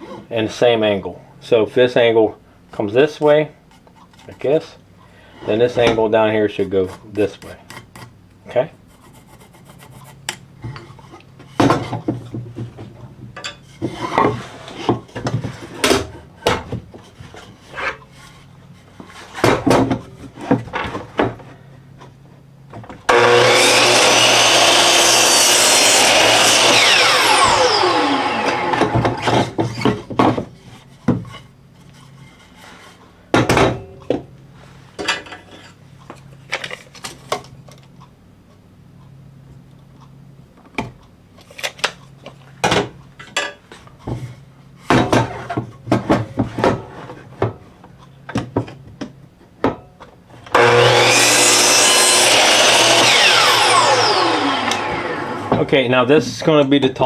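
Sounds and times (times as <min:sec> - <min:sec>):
saw blade winding down: 0:23.1 - 0:29.3, 0:50.6 - 0:55.5
electric miter saw cutting: 0:23.1 - 0:29.6, 0:50.5 - 0:55.7.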